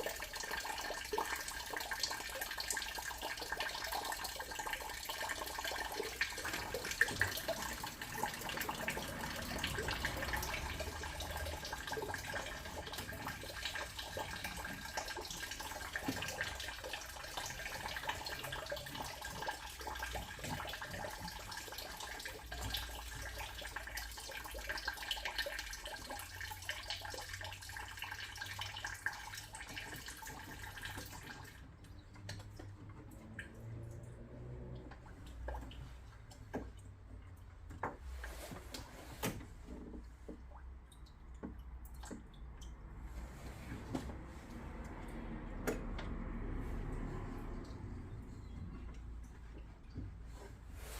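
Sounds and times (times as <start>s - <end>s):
water running from tap: 0.0s - 36.7s.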